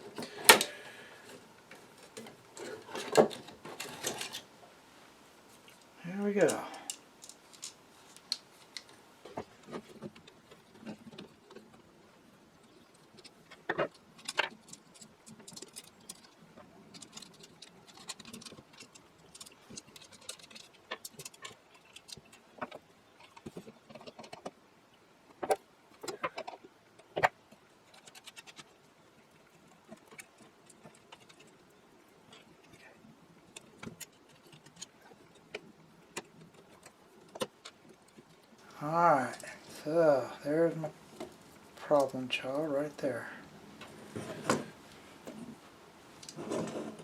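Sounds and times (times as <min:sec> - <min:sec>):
small parts clicking and rattling: 0:00.0 - 0:04.5, 0:06.4 - 0:11.9, 0:12.6 - 0:24.6, 0:25.3 - 0:39.8.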